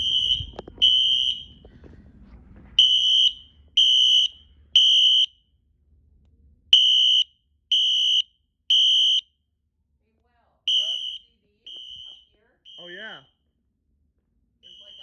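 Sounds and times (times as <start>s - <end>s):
fire alarm horn beeps: 0.0s - 1.7s, 2.8s - 5.4s, 6.8s - 9.4s, 10.7s - 13.5s, 14.6s - 15.0s.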